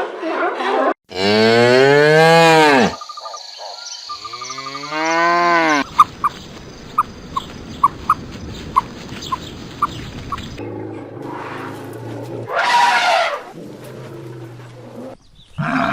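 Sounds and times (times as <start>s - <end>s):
cow mooing: 1.1s - 3.0s, 4.3s - 5.9s.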